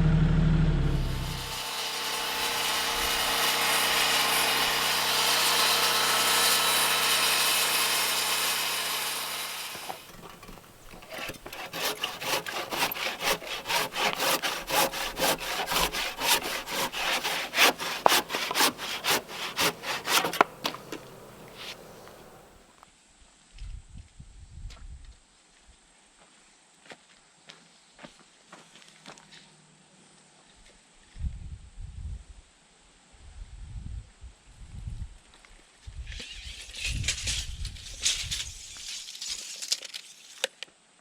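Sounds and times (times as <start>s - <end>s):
handsaw cutting wood: 1.0s - 22.6s.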